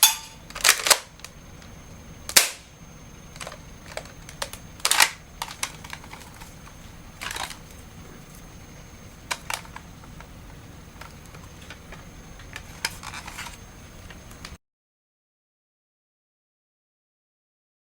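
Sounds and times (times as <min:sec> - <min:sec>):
sharp mechanical clicks: 0:00.0 - 0:01.7, 0:02.3 - 0:02.7, 0:03.3 - 0:07.7.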